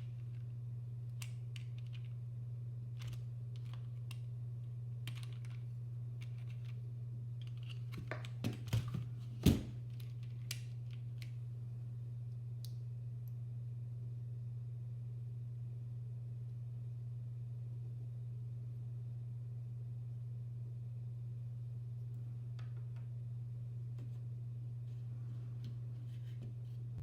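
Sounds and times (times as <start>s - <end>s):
low hum: 0.0s - 27.0s
keyboard parts clicking: 1.2s - 2.1s, 5.0s - 5.6s.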